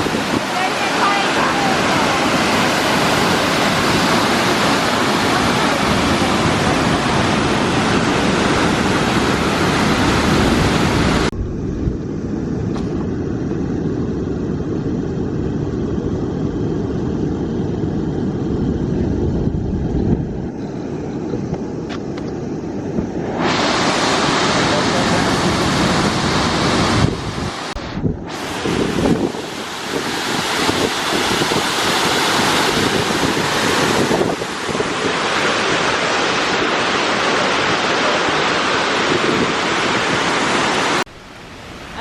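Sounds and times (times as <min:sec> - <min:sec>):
waterfall rushing: 0:00.0 - 0:11.3, 0:23.2 - 0:42.0.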